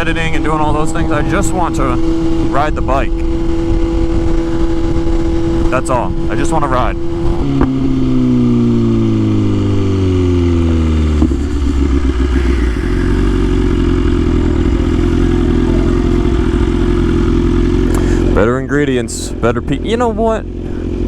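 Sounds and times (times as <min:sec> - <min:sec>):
motorcycle engine revs falling: 0:08.8 - 0:18.6.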